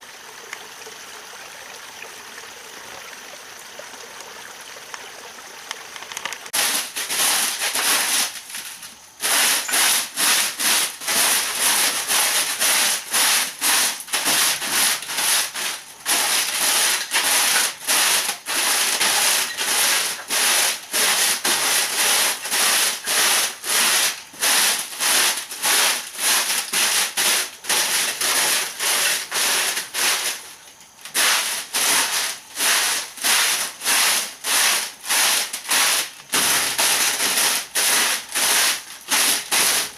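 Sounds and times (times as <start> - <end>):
faint hiss: 5.6 - 39.9
hand tool rasping on wood: 9.2 - 30.3.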